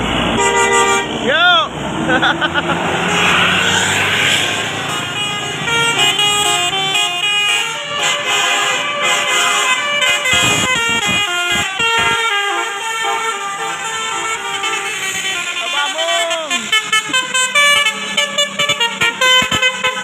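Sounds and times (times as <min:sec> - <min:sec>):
bus horn playing a melody: 0:00.3 - 0:01.2, 0:03.0 - 0:20.0.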